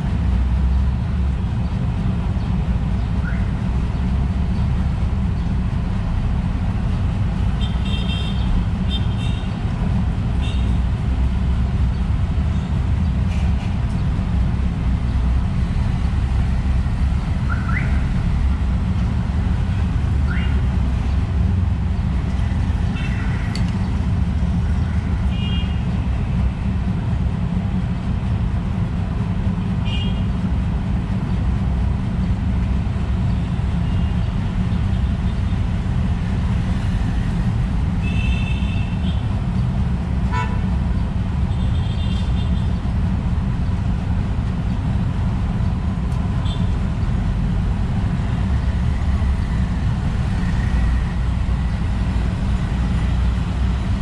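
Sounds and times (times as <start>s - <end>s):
street traffic rumble: 0.0s - 54.0s
click: 23.5s - 23.8s.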